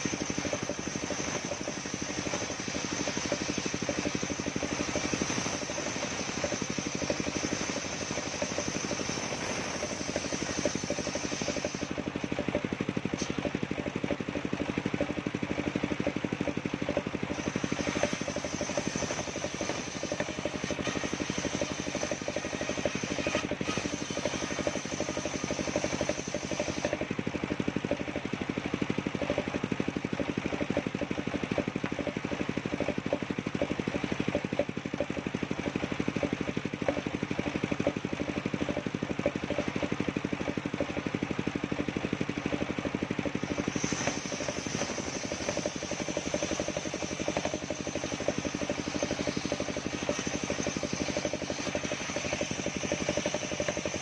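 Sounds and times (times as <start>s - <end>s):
sawmill engine running: 0.0s - 54.0s.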